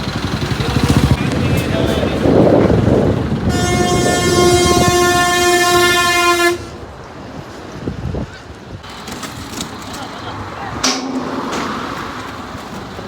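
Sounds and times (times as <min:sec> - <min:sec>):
heavy rumbling: 0:00.0 - 0:06.9
loud horn blast: 0:03.4 - 0:06.8.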